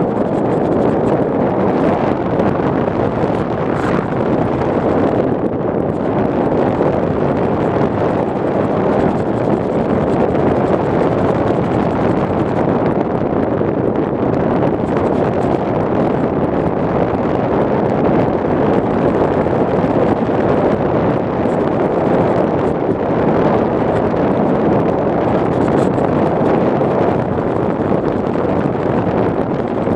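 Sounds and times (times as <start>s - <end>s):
wind buffeting microphone: 0.0s - 29.9s.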